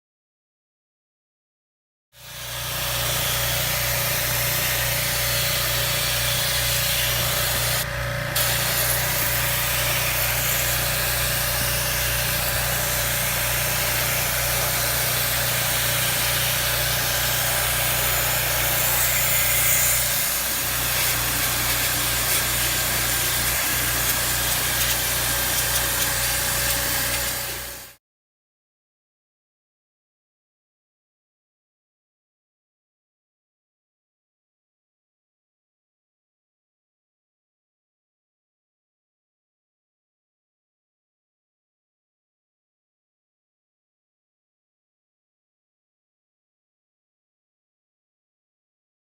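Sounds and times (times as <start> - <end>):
machine motor running: 2.3 - 28.0.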